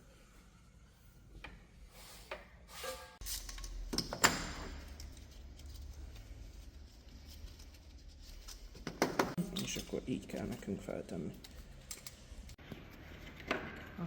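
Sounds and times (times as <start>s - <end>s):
clicks and knocks of tools: 8.4s - 14.0s.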